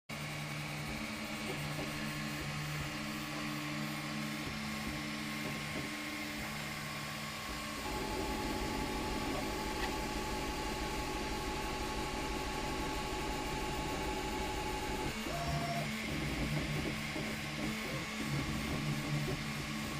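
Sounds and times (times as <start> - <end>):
steady fan tone: 0.1 - 19.9
stepper motors whining: 7.5 - 19.9.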